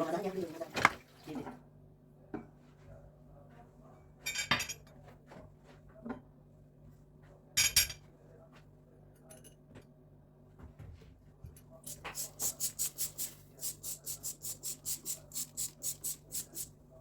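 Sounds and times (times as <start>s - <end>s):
dishes and cutlery clinking: 4.2s - 5.0s.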